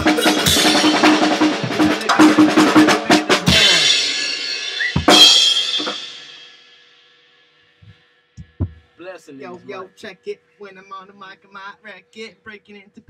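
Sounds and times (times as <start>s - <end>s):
drum kit groove: 0.0s - 9.0s.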